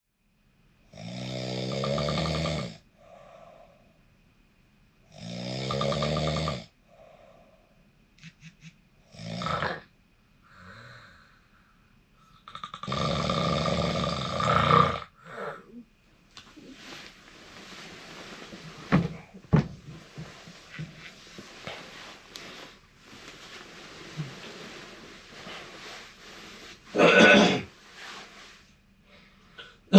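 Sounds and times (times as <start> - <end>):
person snoring: 0.9 - 3.8, 5.1 - 7.6, 9.1 - 9.9, 10.5 - 11.6, 12.3 - 15.8
soft breath out: 3.0 - 4.0, 6.9 - 7.8, 10.4 - 12.4.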